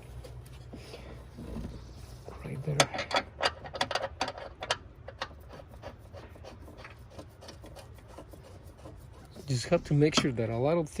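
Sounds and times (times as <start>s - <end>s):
light clicks of metal parts: 2.5s - 5.4s
faint scraping on metal: 5.2s - 10.6s.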